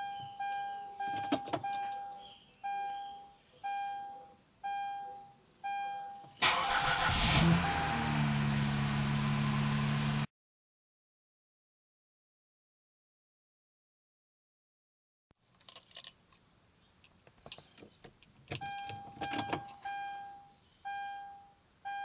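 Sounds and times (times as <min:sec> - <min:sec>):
dashboard warning chime: 0:00.0 - 0:06.7, 0:07.6 - 0:08.4, 0:18.5 - 0:22.0
car engine cranking and idling: 0:06.3 - 0:10.3, 0:15.6 - 0:22.0.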